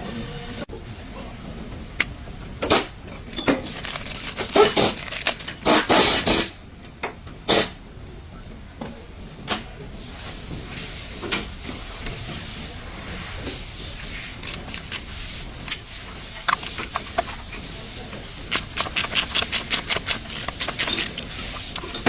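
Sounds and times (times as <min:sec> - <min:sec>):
steady hiss: 0:09.9 - 0:18.8
metal parts and tools knocking: 0:18.5 - 0:22.0.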